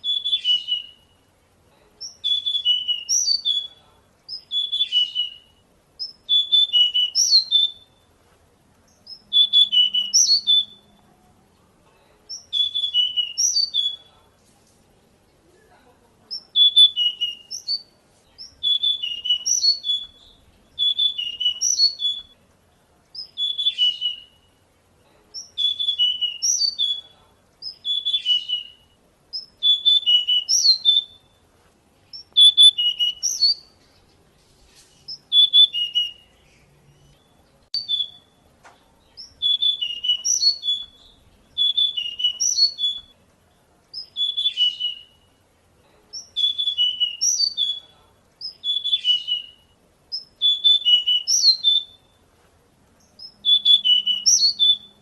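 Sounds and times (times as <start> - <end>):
bird singing whistled phrases: 0.0 - 1.2, 2.0 - 8.1, 8.9 - 11.0, 12.3 - 14.2, 16.3 - 22.4, 23.2 - 24.6, 25.4 - 31.4, 32.1 - 33.8, 35.1 - 38.4, 39.1 - 43.2, 44.0 - 45.4, 46.1 - 52.2, 53.1 - 55.0.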